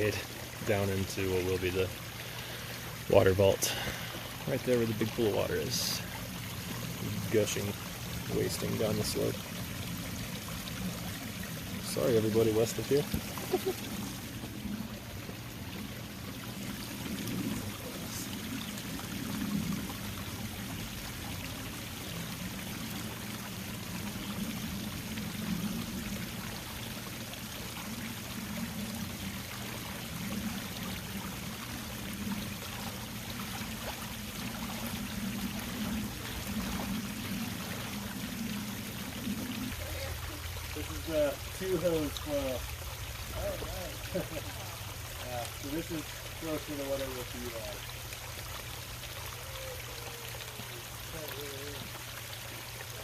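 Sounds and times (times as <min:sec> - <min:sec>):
waterfall rushing and splashing: 0:00.0 - 0:28.3
low water gurgle: 0:00.0 - 0:53.0.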